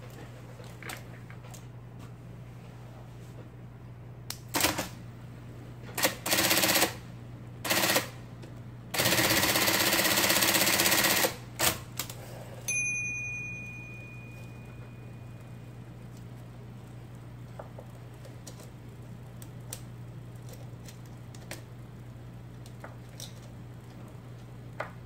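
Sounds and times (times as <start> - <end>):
typewriter bell ding: 12.7 - 15.7.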